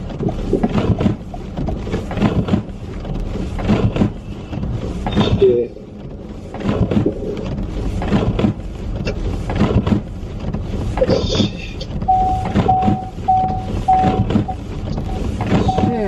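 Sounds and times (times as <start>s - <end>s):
car cabin low rumble: 0.0s - 16.0s
repeating electronic beep: 12.1s - 16.0s.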